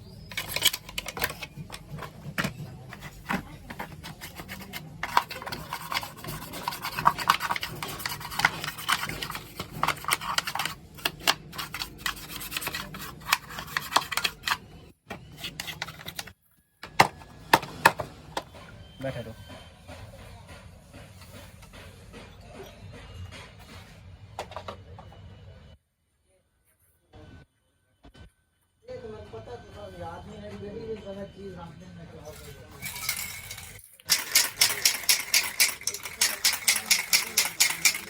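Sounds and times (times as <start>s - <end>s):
rubbing and scraping strokes: 2.8s - 14.6s.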